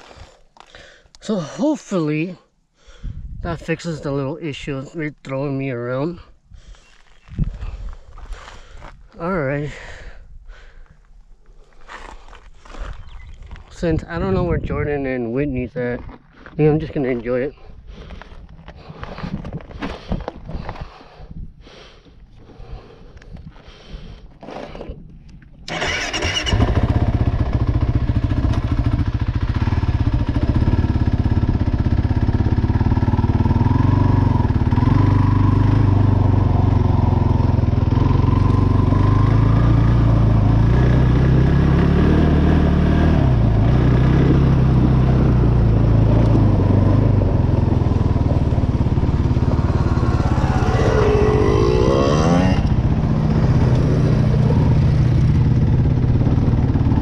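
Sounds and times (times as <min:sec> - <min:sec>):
quad engine revving: 0:25.7 - 0:57.0.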